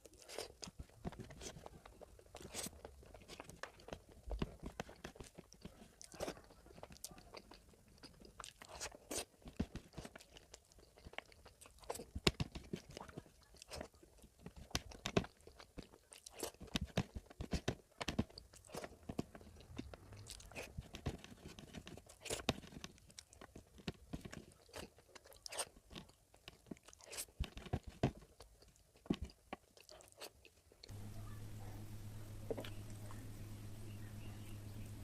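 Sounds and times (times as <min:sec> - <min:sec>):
close chewing and smacking: 0:00.0 - 0:31.0
low electrical hum with hiss: 0:30.6 - 0:35.0.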